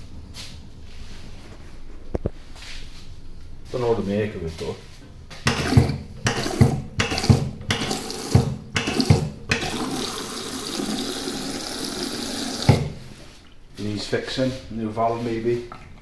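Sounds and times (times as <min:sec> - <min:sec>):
toilet flushing: 0:05.5 - 0:13.2.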